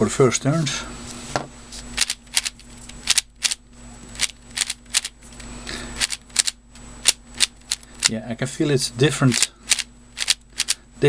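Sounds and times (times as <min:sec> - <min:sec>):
puzzle cube clicking as turned: 0:02.0 - 0:03.6, 0:04.2 - 0:05.1, 0:06.0 - 0:08.1, 0:09.3 - 0:10.8.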